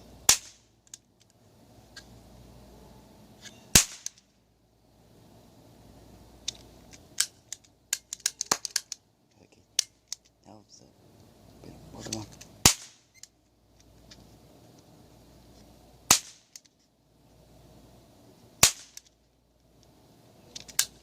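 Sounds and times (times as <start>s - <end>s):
cap gun shots: 0.3s - 0.7s, 3.7s - 4.2s, 12.6s - 13.1s, 16.1s - 16.5s, 18.6s - 19.1s.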